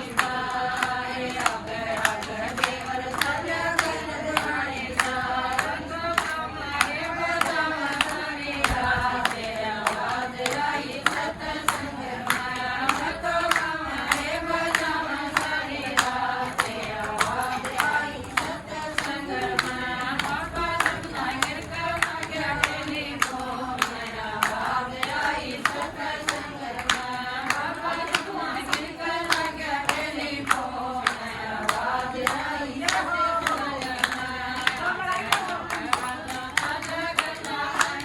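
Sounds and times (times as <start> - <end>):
group singing devotional song: 0.0 - 38.0
hand claps: 0.0 - 38.0.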